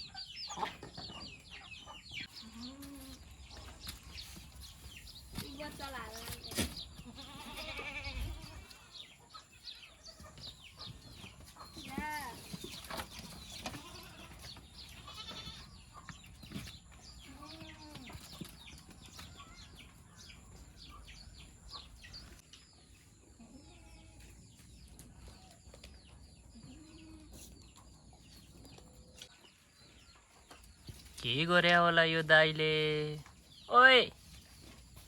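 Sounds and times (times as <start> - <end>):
goats bleating: 7.0 - 8.9, 13.8 - 14.4, 15.0 - 15.7.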